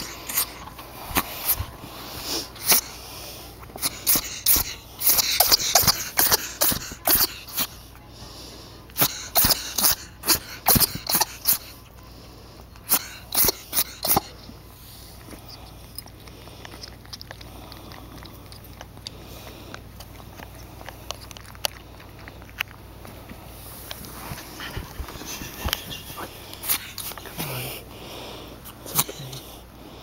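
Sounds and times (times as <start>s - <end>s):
ferret sneezing: 2.3s - 3.0s, 3.8s - 7.8s, 8.9s - 11.8s, 12.8s - 14.4s, 24.6s - 27.8s, 28.6s - 29.6s.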